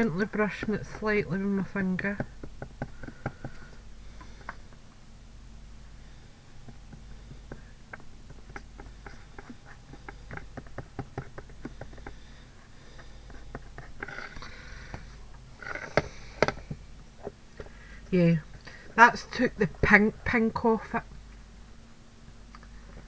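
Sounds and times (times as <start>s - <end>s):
scratchy rub: 7.0s - 14.9s, 15.6s - 17.3s.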